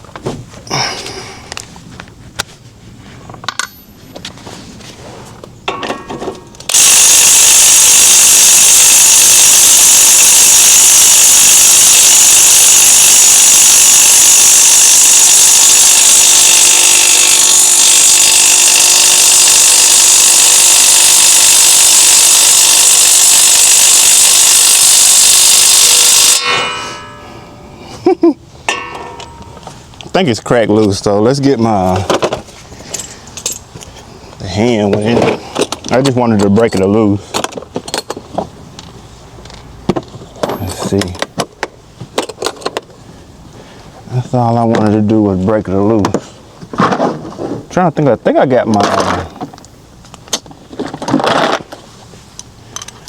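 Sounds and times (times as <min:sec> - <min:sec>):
impact wrench hammering: 0:05.7 - 0:27.6, 0:28.7 - 0:29.7.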